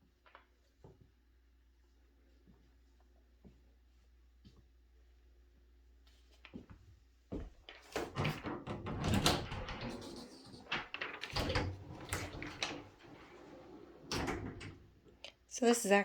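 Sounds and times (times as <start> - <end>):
door clunks and rattles: 7.9 - 15.0.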